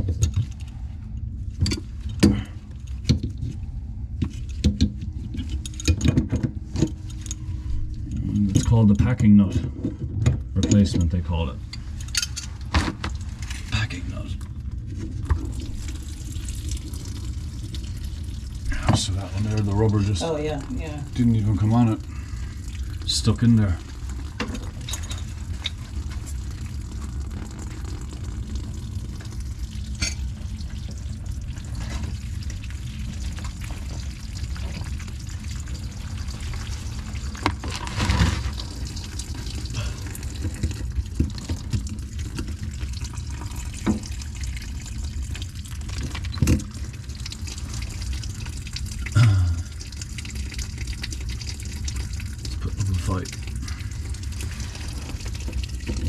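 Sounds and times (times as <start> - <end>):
water running: 10.5 - 56.0.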